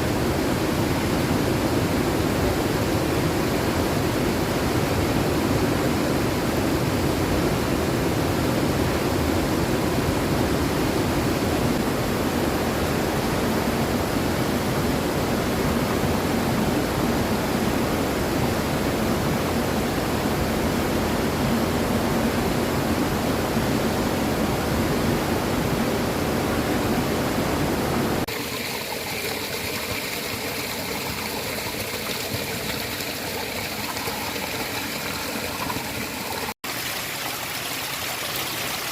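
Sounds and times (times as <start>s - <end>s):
light water flow: 28.2s - 38.9s.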